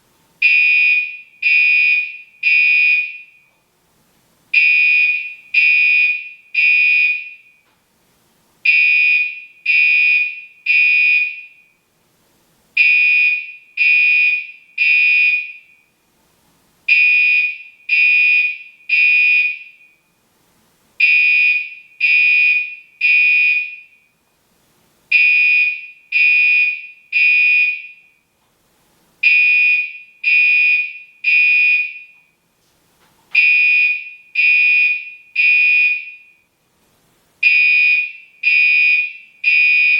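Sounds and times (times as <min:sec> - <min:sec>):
fire alarm horn blasts: 0:00.4 - 0:03.5, 0:04.6 - 0:07.6, 0:08.6 - 0:11.8, 0:12.8 - 0:16.0, 0:16.9 - 0:20.1, 0:21.0 - 0:24.2, 0:25.1 - 0:28.3, 0:29.2 - 0:32.3, 0:33.4 - 0:36.6, 0:37.4 - 0:39.9.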